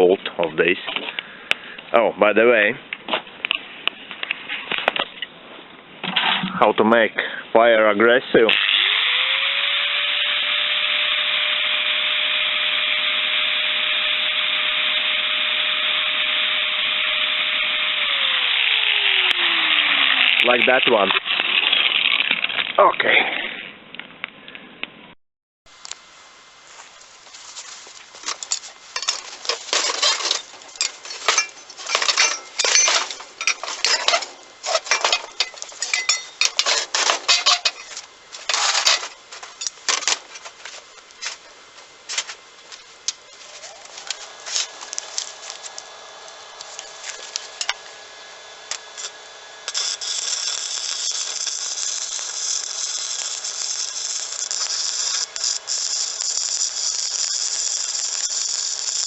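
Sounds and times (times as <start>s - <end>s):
forge fire crackling and popping: 25.7s - 47.9s, 48.7s - 59.0s
mechanical hum: 25.8s - 59.0s.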